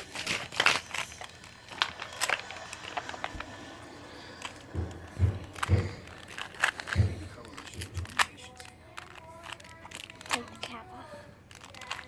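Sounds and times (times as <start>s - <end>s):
puzzle cube twisting clicks: 5.4s - 10.8s, 11.5s - 12.0s.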